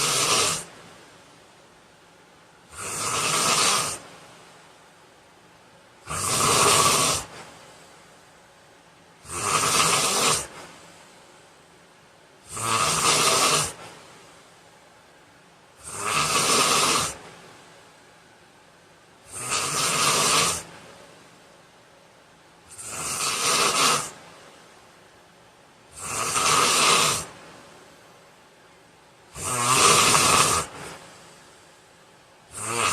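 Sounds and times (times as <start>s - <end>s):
man snoring: 0.0s - 0.7s, 2.7s - 4.0s, 6.0s - 7.3s, 9.2s - 10.6s, 12.5s - 13.8s, 15.8s - 17.2s, 19.3s - 20.7s, 22.7s - 24.2s, 26.0s - 27.3s, 29.3s - 31.0s, 32.5s - 32.9s.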